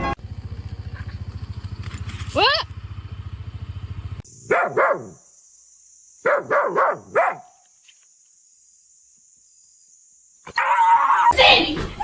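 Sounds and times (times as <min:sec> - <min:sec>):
dog barking: 0:04.5 - 0:05.2, 0:06.2 - 0:07.6.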